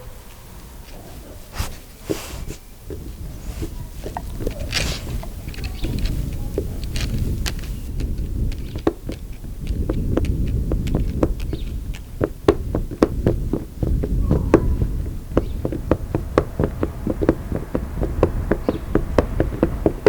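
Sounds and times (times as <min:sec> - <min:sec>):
steady low rumble: 0:00.0 - 0:20.0
rapid clicks and taps: 0:04.0 - 0:20.0.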